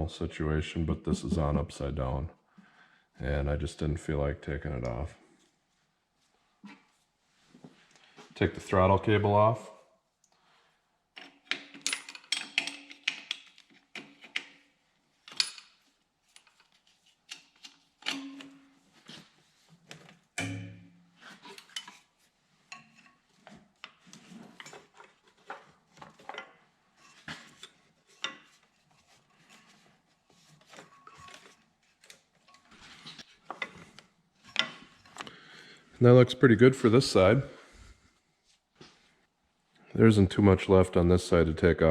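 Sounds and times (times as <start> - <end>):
metal tools clinking: 11.7 - 13.4.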